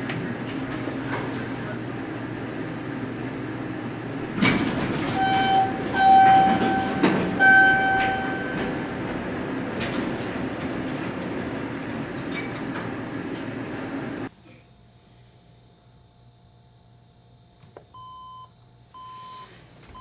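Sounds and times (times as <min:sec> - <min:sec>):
train rumbling: 0:00.0 - 0:14.3.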